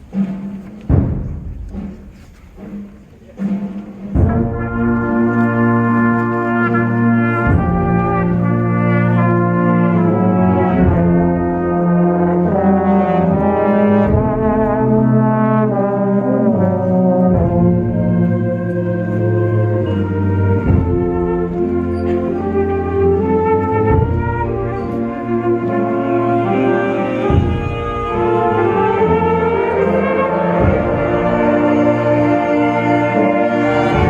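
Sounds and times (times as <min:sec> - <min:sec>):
concert band playing held chords: 0:00.0 - 0:34.0
brass playing: 0:04.1 - 0:34.0.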